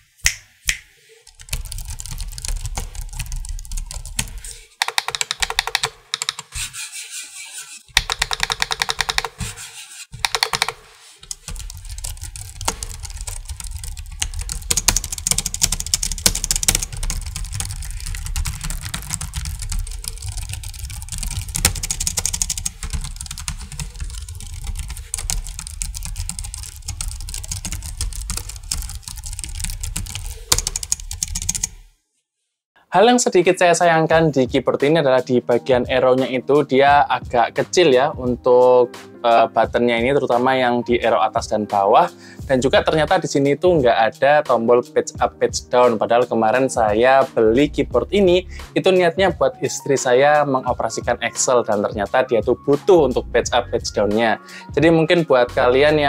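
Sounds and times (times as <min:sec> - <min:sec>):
keyboard typing: 0:01.3 - 0:06.5, 0:07.9 - 0:09.5, 0:10.2 - 0:31.8.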